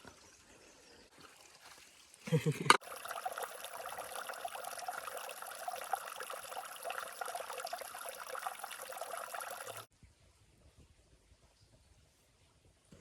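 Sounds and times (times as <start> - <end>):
water trickling: 0.0 - 9.9.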